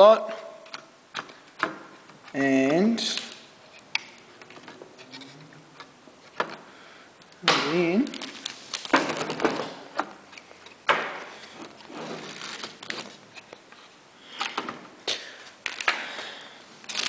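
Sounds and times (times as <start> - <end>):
scraping and rustling: 8.1 - 14.0.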